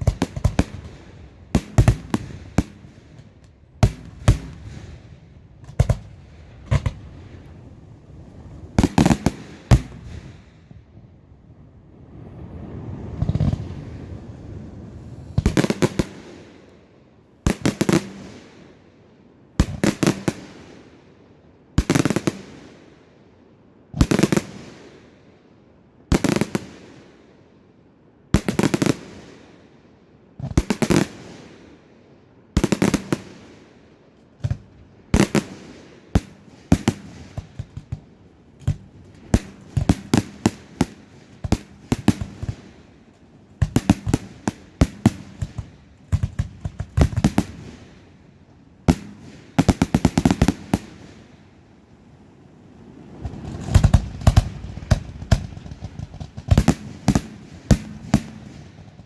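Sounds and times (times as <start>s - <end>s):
fireworks bangs with echo: 0.0s - 7.6s, 8.8s - 11.0s, 12.6s - 16.7s, 17.4s - 18.8s, 19.6s - 20.9s, 32.6s - 33.7s, 34.4s - 51.5s, 53.2s - 59.0s
fireworks crackling: 0.0s - 18.7s, 19.6s - 20.8s, 34.5s - 59.0s.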